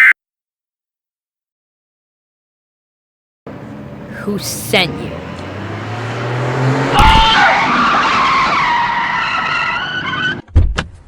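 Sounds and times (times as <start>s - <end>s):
car engine revving: 3.5s - 4.2s, 5.1s - 9.9s
tires squealing in a skid: 5.3s - 10.5s.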